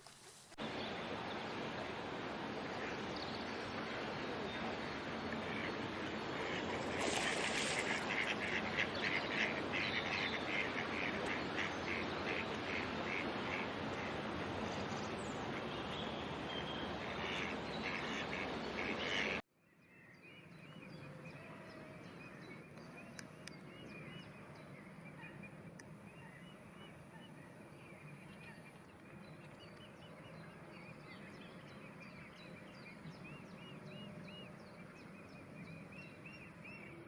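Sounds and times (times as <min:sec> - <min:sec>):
steady background hiss: 0:00.0 - 0:15.6
waterfowl calling: 0:05.2 - 0:14.2, 0:17.0 - 0:19.4.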